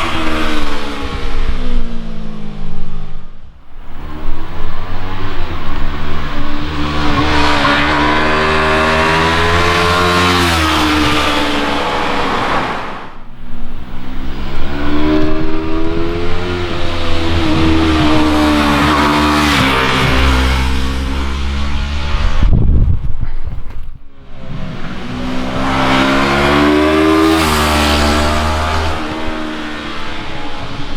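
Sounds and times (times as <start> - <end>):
motorcycle accelerating past: 3.8 - 13.2, 14.0 - 22.8, 24.3 - 30.9.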